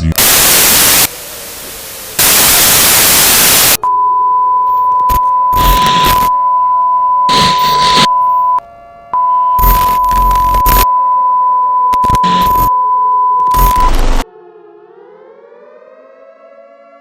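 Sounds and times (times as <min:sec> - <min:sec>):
static bursts: 0:00.0 - 0:03.8, 0:05.1 - 0:06.3, 0:07.3 - 0:08.1, 0:09.6 - 0:10.9, 0:11.9 - 0:12.7, 0:13.4 - 0:14.2
high steady broadcast tone: 0:00.0 - 0:08.6, 0:09.2 - 0:14.2.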